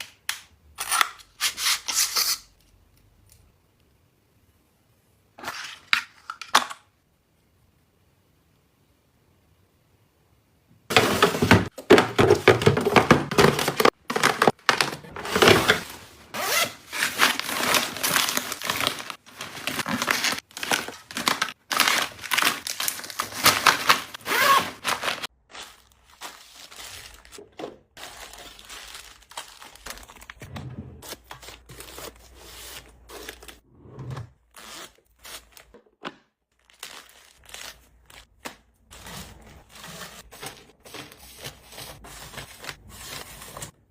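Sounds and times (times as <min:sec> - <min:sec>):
packaging crinkling and tearing: 0:13.6 - 0:27.4, 0:28.0 - 0:30.4, 0:36.6 - 0:41.5.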